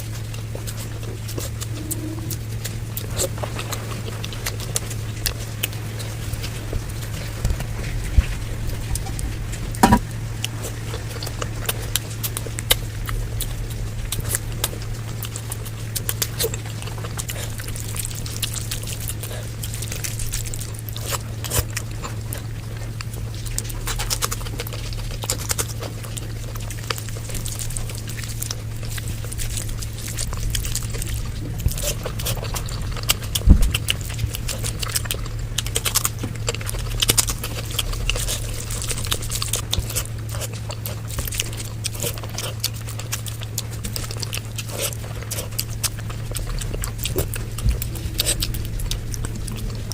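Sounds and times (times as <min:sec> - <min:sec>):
steady low hum: 0:00.0 - 0:49.9
wet chewing: 0:00.0 - 0:49.9
sharp knock: 0:09.8 - 0:10.0.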